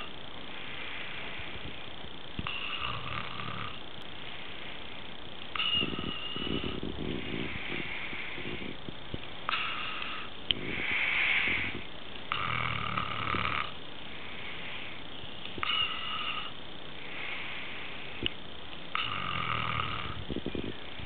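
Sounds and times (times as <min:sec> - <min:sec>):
breathy exhale: 0:00.0 - 0:03.0, 0:04.2 - 0:08.8, 0:09.5 - 0:12.5, 0:14.1 - 0:18.3
man snoring: 0:02.4 - 0:03.8, 0:09.5 - 0:13.8, 0:15.6 - 0:16.6, 0:18.9 - 0:20.2.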